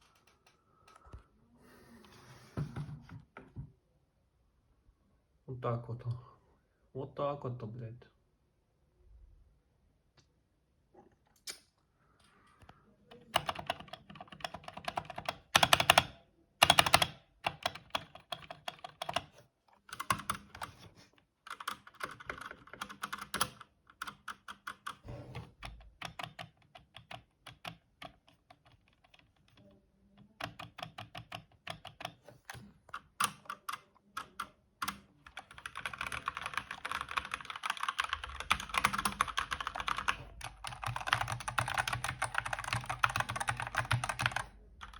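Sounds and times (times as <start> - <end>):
mechanical keyboard typing: 13.1 - 20.8, 21.5 - 25.0, 25.6 - 29.6, 30.2 - 44.9.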